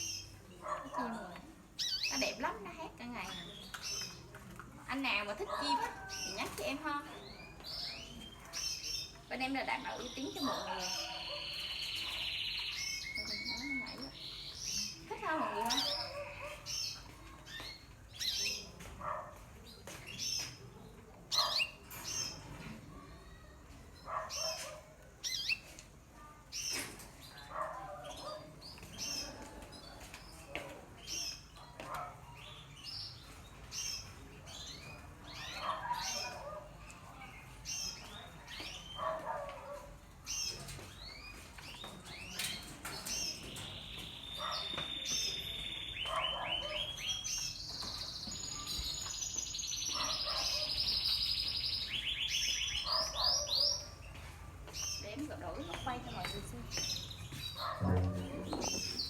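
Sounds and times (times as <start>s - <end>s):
canaries chirping: 0.0s - 59.0s
canary singing fast trills: 1.8s - 4.3s, 5.4s - 18.7s, 25.2s - 25.7s.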